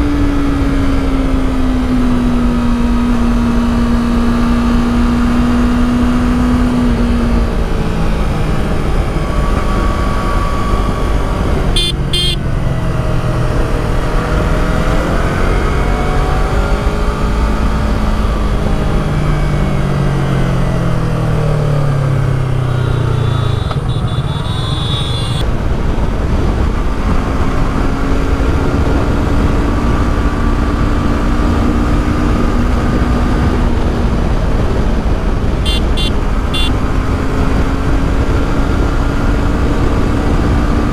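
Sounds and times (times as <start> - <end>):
road traffic rumble: 0.0 - 40.9
vehicles passing: 0.0 - 40.9
car horn toots: 11.8 - 12.5, 22.8 - 25.4, 35.6 - 36.8.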